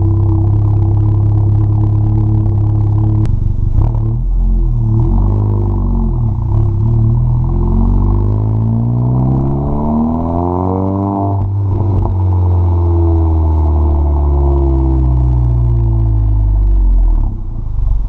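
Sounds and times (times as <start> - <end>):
car engine revving: 0.0 - 18.0
exhaust crackle: 0.0 - 18.0.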